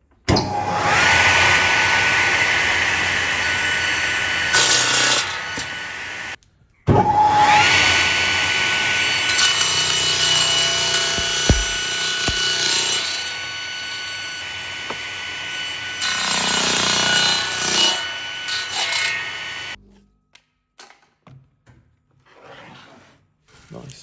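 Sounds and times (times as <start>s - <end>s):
power tool cutting wood: 7.0s - 12.5s, 14.1s - 19.8s.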